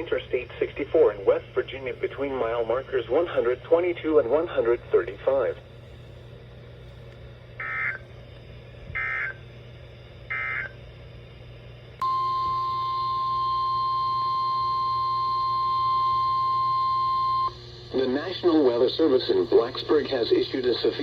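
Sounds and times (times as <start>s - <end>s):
loud steady alarm tone: 7.6s - 8.0s, 8.9s - 9.4s, 10.3s - 10.8s, 12.0s - 17.6s
warbling data tones: 7.6s - 8.0s.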